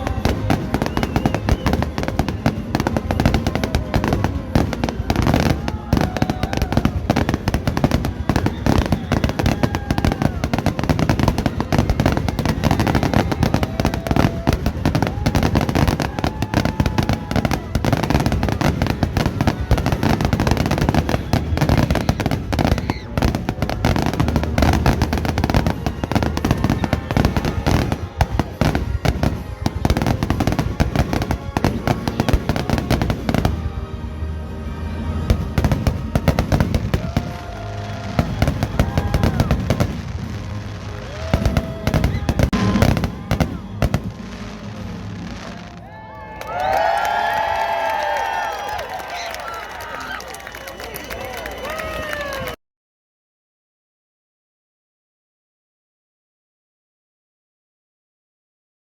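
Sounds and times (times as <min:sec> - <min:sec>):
music playing: 0:00.0 - 0:46.0
fireworks bangs and crackles: 0:00.0 - 0:49.4.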